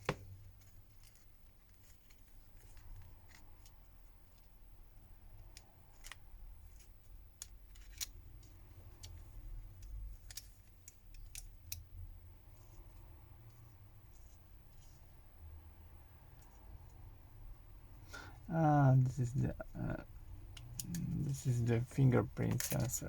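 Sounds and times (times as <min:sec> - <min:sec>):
small parts clicking and tapping: 0:00.0 - 0:04.6, 0:05.2 - 0:15.0, 0:19.9 - 0:21.5, 0:22.3 - 0:23.0.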